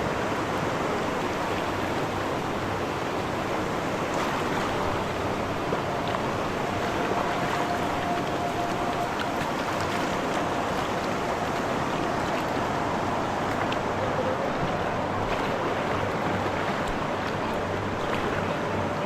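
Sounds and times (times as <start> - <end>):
river water rushing: 0.0 - 19.0
faint splashing: 4.1 - 19.0.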